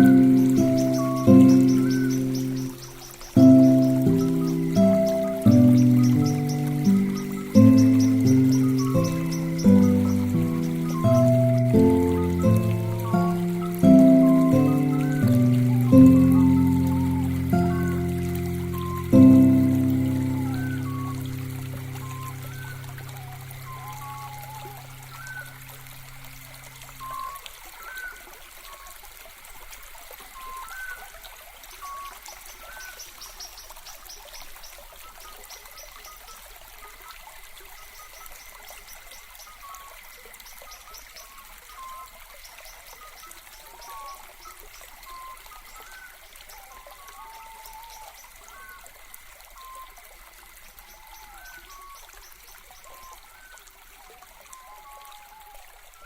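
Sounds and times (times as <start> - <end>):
bubbly plinks: 0.0 - 27.4
faint steady hiss: 0.0 - 56.0
water trickling and gurgling: 0.0 - 56.0.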